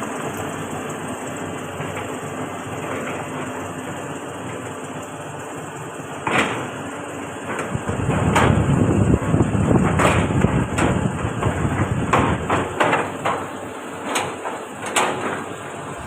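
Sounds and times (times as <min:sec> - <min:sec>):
excavator diesel engine under load: 0:00.0 - 0:16.0
metallic knocks and clanks: 0:07.4 - 0:08.7, 0:09.8 - 0:15.6.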